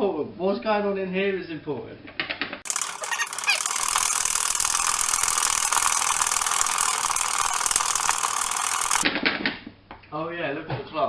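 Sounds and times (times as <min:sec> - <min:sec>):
whisk rattling against bowl: 0:02.7 - 0:09.0.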